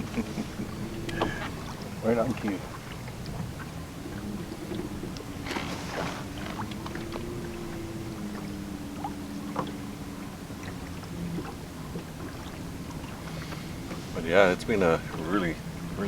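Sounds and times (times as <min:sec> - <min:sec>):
boat motor running: 0:00.0 - 0:16.0
light clicks and knocks: 0:01.0 - 0:01.6.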